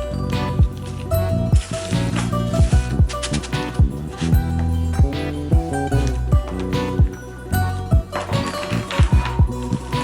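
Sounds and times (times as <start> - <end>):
background music with beat: 0.0 - 10.0.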